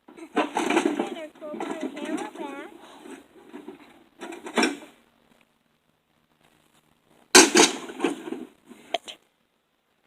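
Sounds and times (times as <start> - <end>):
clattering: 0.0 - 4.9, 7.4 - 8.5
microwave struck with crash: 7.4 - 8.4.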